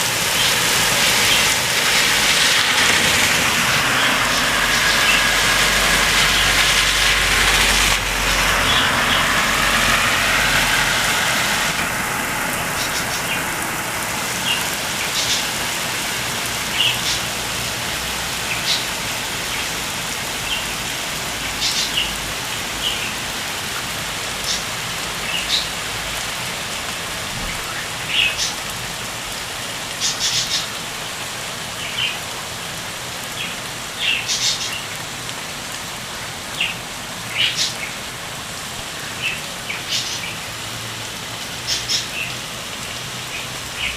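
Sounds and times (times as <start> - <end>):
vehicle passing: 0.0 - 19.5
heavy rain pouring: 0.0 - 43.9.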